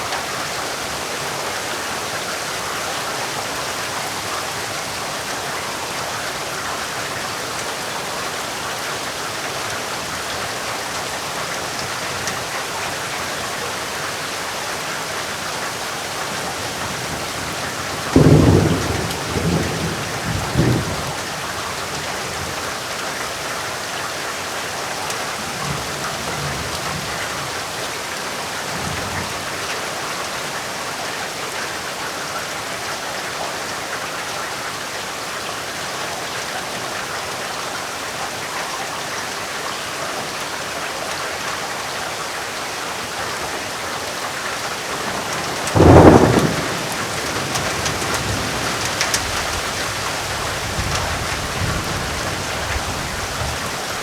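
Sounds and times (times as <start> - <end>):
heavy rain: 0.0 - 54.0
thunder rumble: 17.1 - 21.2, 44.9 - 54.0
loud thunderclap: 17.9 - 21.2, 44.9 - 53.6.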